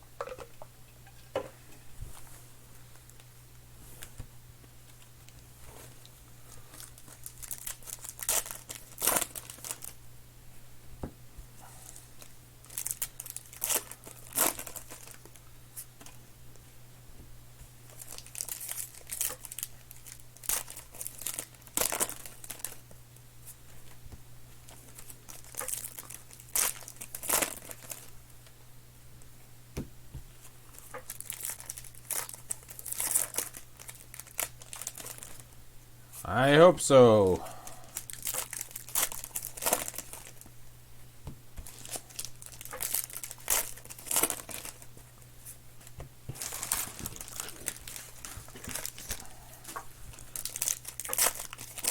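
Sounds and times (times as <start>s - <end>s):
card pack wrappers tearing and crinkling: 6.7s - 10.0s, 12.6s - 15.4s, 17.9s - 22.8s, 24.7s - 28.1s, 30.9s - 35.5s, 37.9s - 40.5s, 41.6s - 44.9s, 46.4s - 49.2s, 50.1s - 51.9s.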